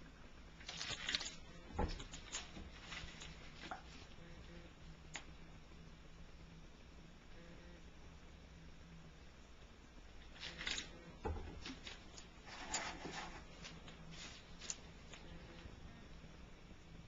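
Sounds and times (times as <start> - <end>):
rustling and scraping handling: 0.6 - 4.6, 10.2 - 15.8.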